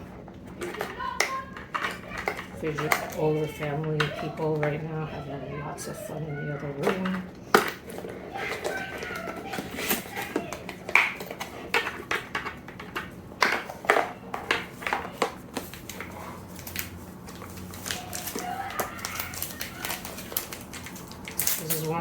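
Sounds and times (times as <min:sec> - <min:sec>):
faint voices: 0:00.0 - 0:22.0
handling small objects and packaging: 0:06.8 - 0:22.0.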